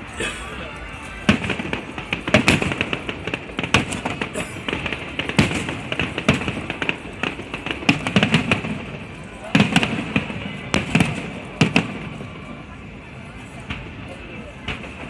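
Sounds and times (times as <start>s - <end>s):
music playing: 0.0s - 2.9s
fireworks bangs and crackles: 0.0s - 15.0s.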